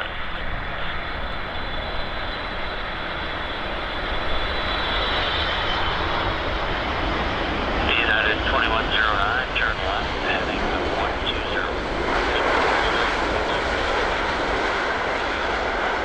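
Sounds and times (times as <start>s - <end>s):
jet engine rumble and hiss: 0.0s - 16.0s.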